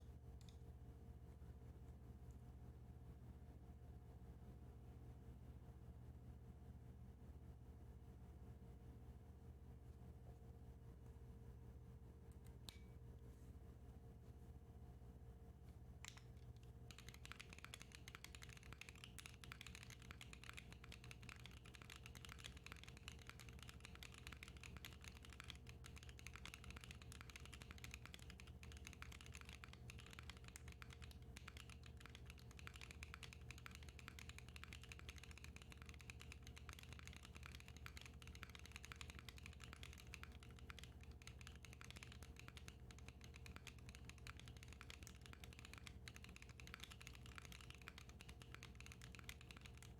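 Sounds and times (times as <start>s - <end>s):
fast mechanical keyboard typing: 16.1s - 49.9s.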